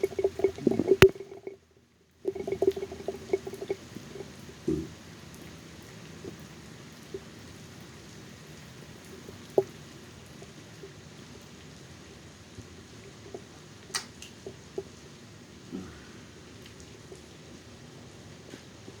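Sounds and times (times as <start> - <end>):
raindrops popping on a phone: 0.0 - 1.6, 2.2 - 15.5
hiss of rain: 2.5 - 19.0.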